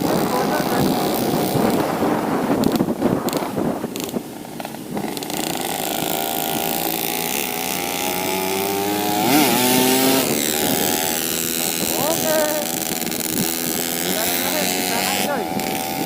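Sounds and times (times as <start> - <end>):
two-stroke motorcycle engine revving: 0.0 - 16.0.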